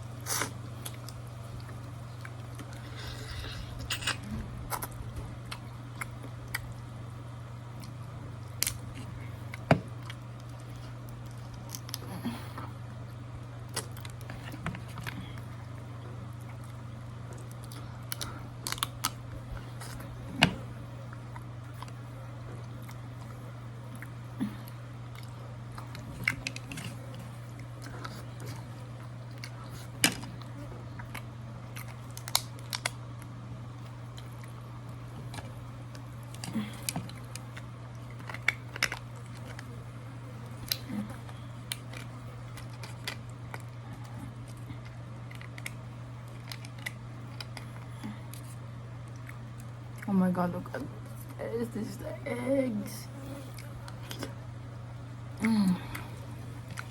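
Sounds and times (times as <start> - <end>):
person chewing: 0.0 - 50.1
steady low hum: 0.0 - 56.9
crab shell cracking: 7.5 - 12.1, 16.4 - 20.5, 25.2 - 50.0.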